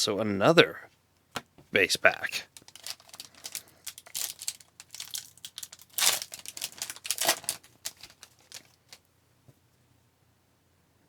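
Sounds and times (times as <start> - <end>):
foil wrapper tearing and crinkling: 2.5 - 9.0.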